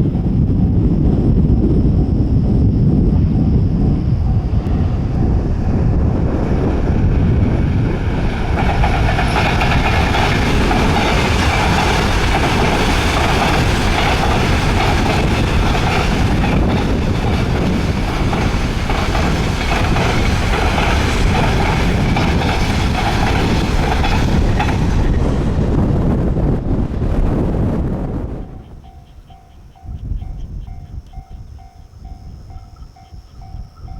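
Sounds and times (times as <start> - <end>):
train wheels rumbling on rails: 0.0 - 33.9.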